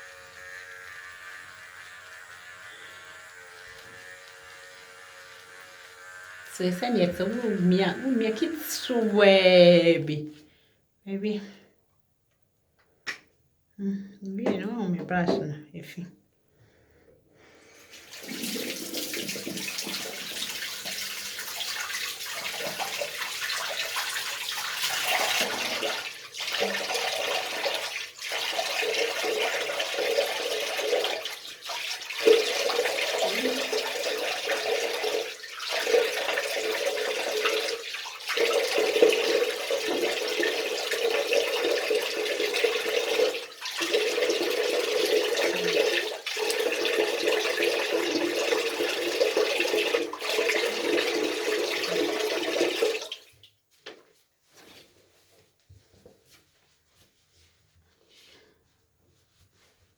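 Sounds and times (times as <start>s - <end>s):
tap water running into sink: 18.0s - 53.3s.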